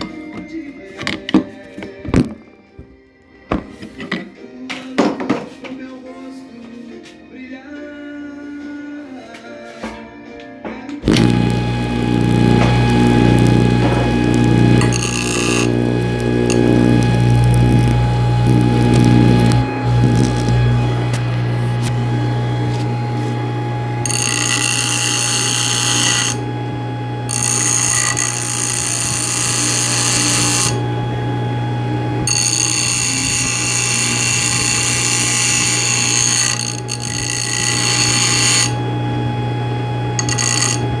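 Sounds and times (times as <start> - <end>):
sander motor humming: 11.0 - 41.0.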